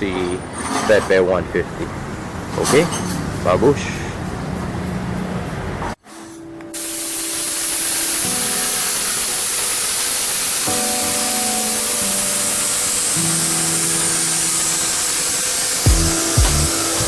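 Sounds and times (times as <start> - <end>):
background music with held chords: 6.4 - 17.0
loud steady hiss: 6.7 - 17.0.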